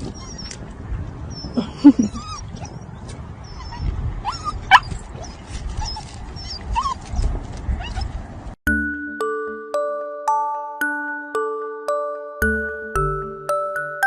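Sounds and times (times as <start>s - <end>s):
puppy whimpering: 0.0s - 0.6s, 1.3s - 8.1s.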